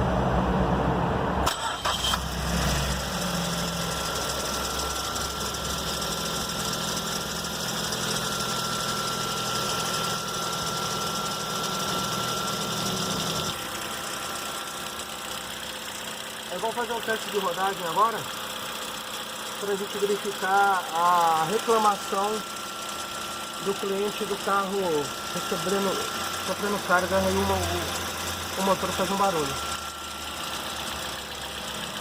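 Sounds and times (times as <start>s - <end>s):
car engine starting and idling: 0.0s - 32.0s
thin steady whine: 23.6s - 31.9s.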